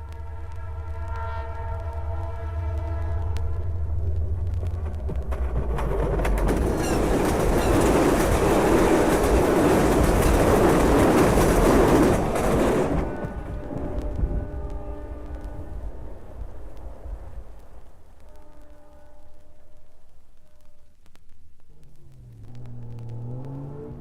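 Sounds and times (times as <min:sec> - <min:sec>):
faint train horn: 0:00.0 - 0:04.6, 0:11.3 - 0:21.0
train passing rumble: 0:00.0 - 0:20.8.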